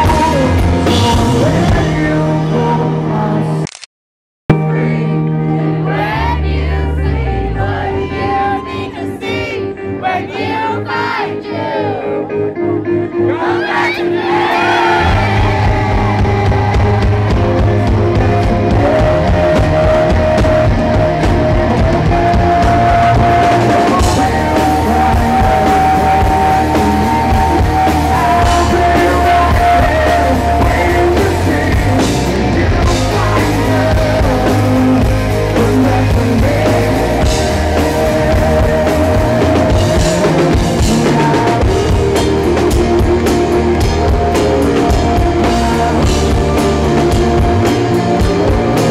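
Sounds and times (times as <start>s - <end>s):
drum kit: 0.0s - 3.4s, 14.3s - 48.9s
person singing: 0.0s - 3.7s, 4.5s - 12.4s, 13.1s - 48.9s
electric guitar: 0.0s - 3.8s, 4.5s - 48.9s.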